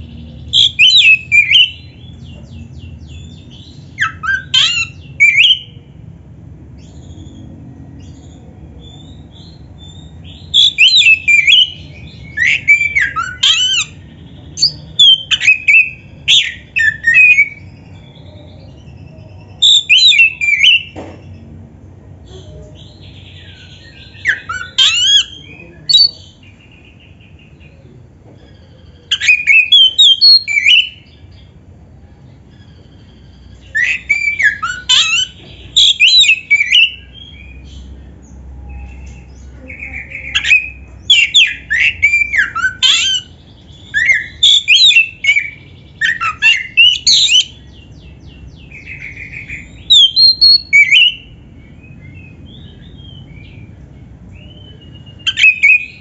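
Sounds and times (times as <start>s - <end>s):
bird singing swooping whistles: 0.5s - 1.8s, 19.6s - 21.0s, 29.1s - 31.1s, 33.6s - 37.6s, 40.2s - 47.6s, 48.7s - 51.3s, 54.4s - 56.0s.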